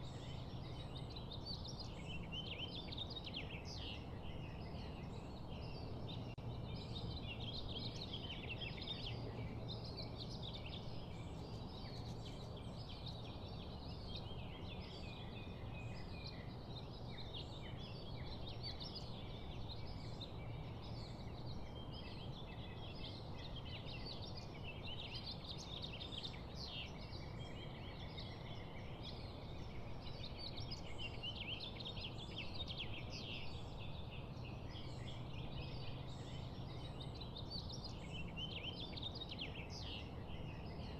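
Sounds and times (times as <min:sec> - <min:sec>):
small birds chattering and chirping: 0:00.0 - 0:40.9.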